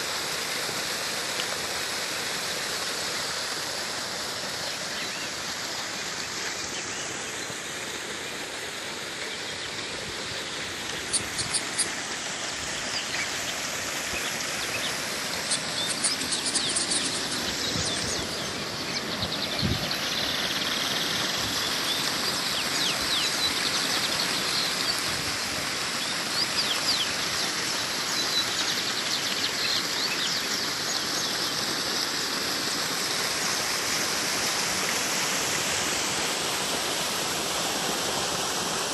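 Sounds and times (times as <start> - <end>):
small waterfall rushing: 0.0 - 38.9
birds chirping: 4.7 - 25.0.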